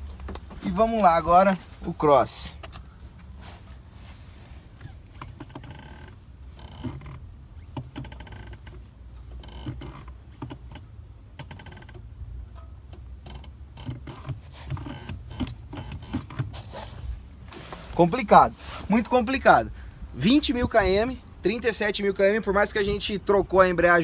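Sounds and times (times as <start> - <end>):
clutch pedal creaking squeaks: 4.7 - 18.0.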